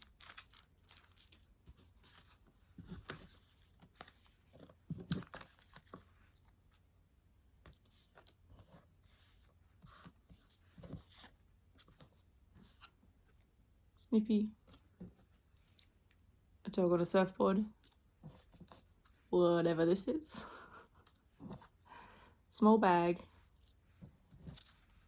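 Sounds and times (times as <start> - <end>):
paper packet rustling and tearing: 0.0 - 4.1.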